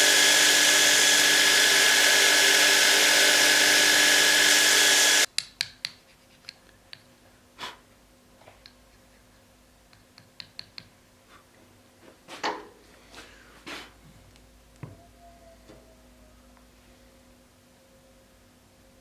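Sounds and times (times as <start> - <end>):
power tool running: 0.0 - 5.3.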